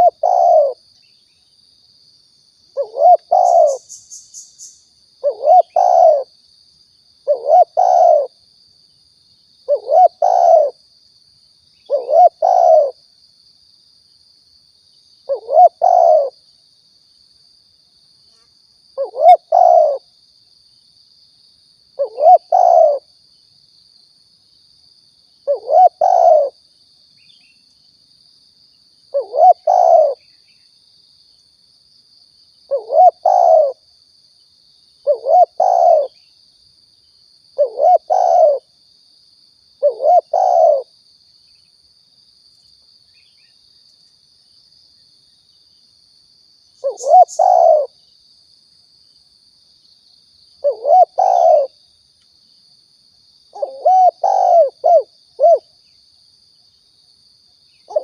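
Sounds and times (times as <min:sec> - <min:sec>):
dove cooing: 0:00.0 - 0:00.8, 0:02.8 - 0:03.9, 0:05.2 - 0:06.3, 0:07.2 - 0:08.4, 0:09.7 - 0:10.8, 0:11.9 - 0:13.0, 0:15.3 - 0:16.4, 0:19.0 - 0:20.0, 0:22.0 - 0:23.1, 0:25.4 - 0:26.6, 0:29.1 - 0:30.2, 0:32.7 - 0:33.8, 0:35.0 - 0:36.2, 0:37.6 - 0:38.7, 0:39.8 - 0:40.9, 0:46.8 - 0:48.0, 0:50.6 - 0:51.8, 0:53.6 - 0:55.7.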